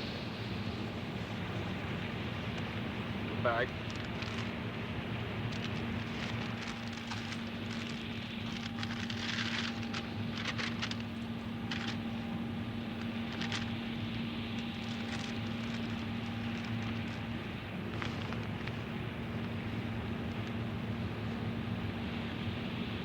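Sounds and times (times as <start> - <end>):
low mechanical hum: 0.0 - 23.0
crackles and clicks: 2.4 - 20.6.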